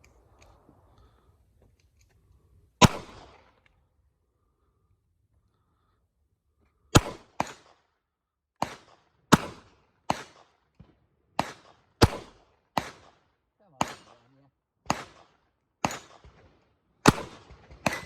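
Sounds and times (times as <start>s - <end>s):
pistol shots: 2.8s - 3.5s, 6.9s - 7.8s, 8.6s - 10.5s, 11.4s - 13.2s, 13.8s - 14.2s, 14.9s - 18.0s.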